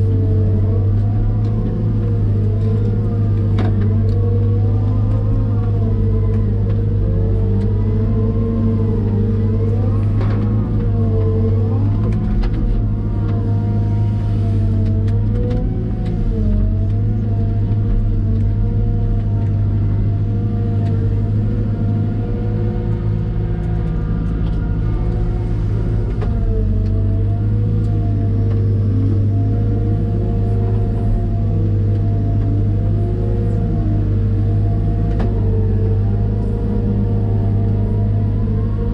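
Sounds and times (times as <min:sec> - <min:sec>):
diesel engine drone with whine: 0:00.0 - 0:38.9.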